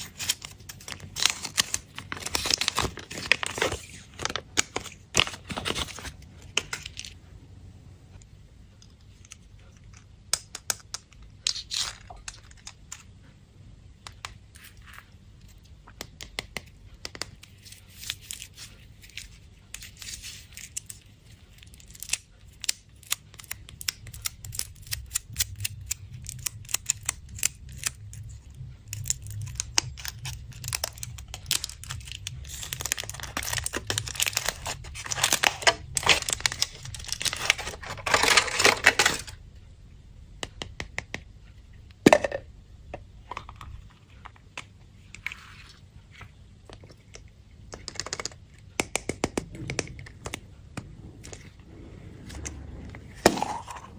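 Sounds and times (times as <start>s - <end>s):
foil wrappers crinkling: 0.0s - 7.1s, 17.5s - 39.4s.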